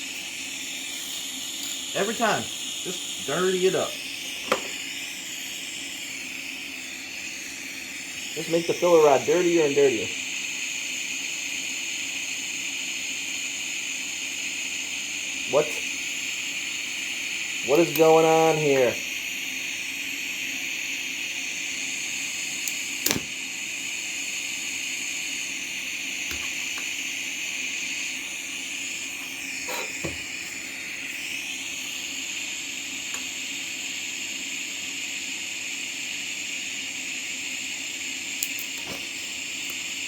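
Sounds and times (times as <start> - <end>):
welding torch hissing: 0.0 - 40.0
sharp click: 22.7 - 23.3.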